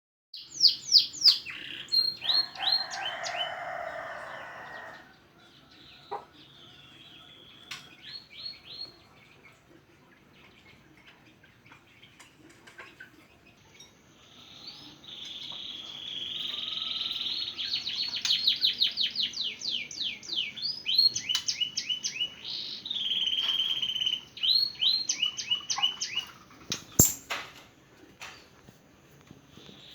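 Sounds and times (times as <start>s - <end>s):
songbird singing trills: 0.4s - 9.3s, 13.6s - 27.3s
sharp click: 26.7s - 27.5s.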